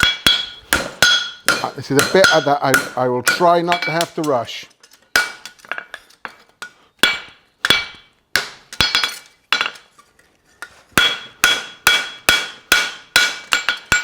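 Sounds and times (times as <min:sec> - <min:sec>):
hammer striking horseshoe on anvil: 0:00.0 - 0:04.4, 0:07.0 - 0:09.8, 0:11.0 - 0:14.0.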